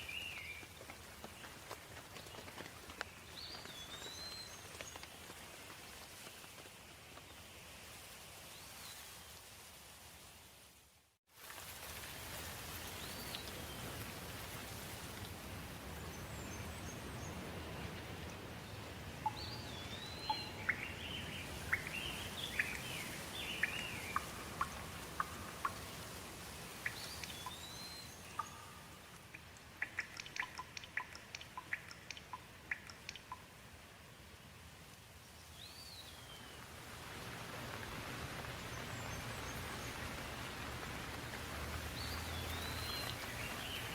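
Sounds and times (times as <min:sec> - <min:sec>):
steady rain: 0:00.0 - 0:43.9
birds chirping: 0:16.1 - 0:26.0, 0:26.8 - 0:33.5, 0:41.9 - 0:43.9
drips tapping: 0:28.4 - 0:33.4.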